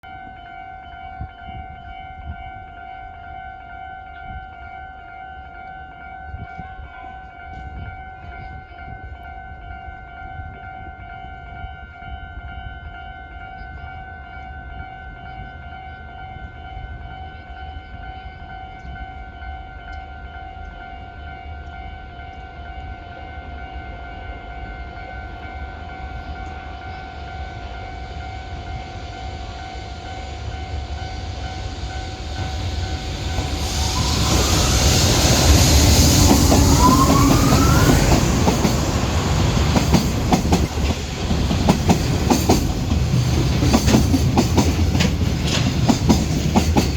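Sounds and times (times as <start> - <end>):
train passing loudly: 14.6 - 46.9
rising whine: 27.0 - 40.9
wheels clacking over rail joints: 30.8 - 46.9.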